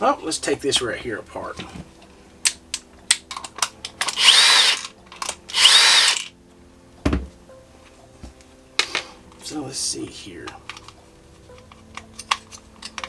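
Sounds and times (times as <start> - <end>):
cordless drill motor whirring: 4.0 - 4.9, 5.5 - 6.3
handling clicks and knocks: 10.6 - 13.0.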